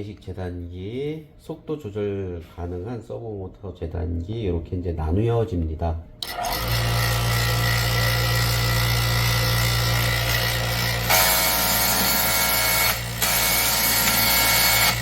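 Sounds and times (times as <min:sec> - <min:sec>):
cutting machine motor hum: 0:06.2 - 0:15.0
knife sharpener grinding blade: 0:10.0 - 0:15.0.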